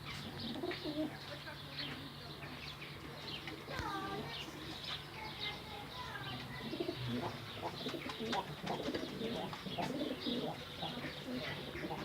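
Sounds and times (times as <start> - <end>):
pigeons cooing: 0.0 - 1.2, 6.3 - 12.0
small birds chirping: 0.0 - 12.0.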